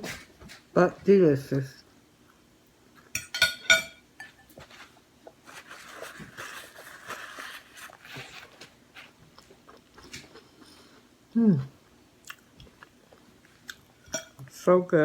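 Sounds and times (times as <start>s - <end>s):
cutlery clinking on plate: 3.2s - 4.6s
chewing food: 5.2s - 11.0s, 11.8s - 14.5s.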